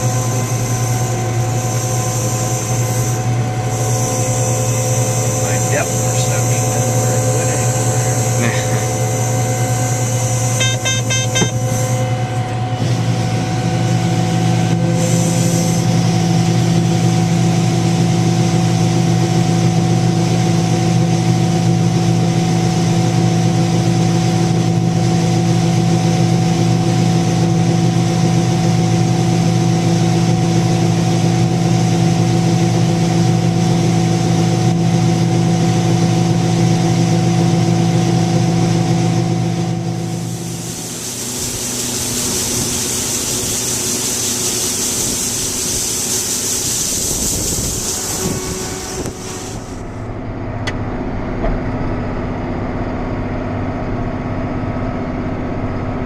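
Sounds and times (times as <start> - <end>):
diesel engine running: 0.0 - 56.0
high beeps: 10.6 - 11.8.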